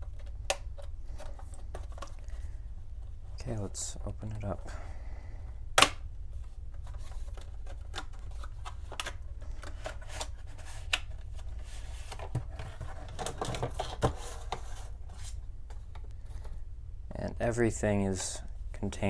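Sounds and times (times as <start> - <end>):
steady low hum: 0.0 - 19.0
packaging clicks and scrapes: 6.8 - 15.4.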